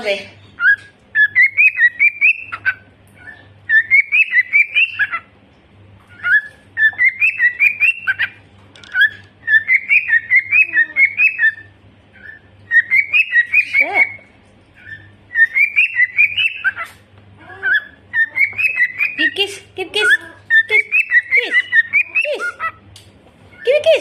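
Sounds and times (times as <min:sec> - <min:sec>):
parrot whistling and chirping: 0:00.6 - 0:05.3, 0:06.1 - 0:19.4, 0:20.0 - 0:22.8, 0:23.5 - 0:24.0.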